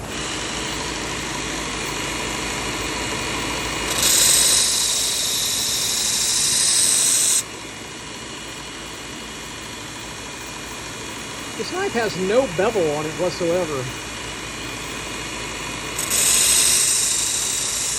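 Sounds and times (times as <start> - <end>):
blade grinding on belt: 0.0 - 7.5, 11.5 - 17.9
belt sharpener motor running: 0.0 - 17.9.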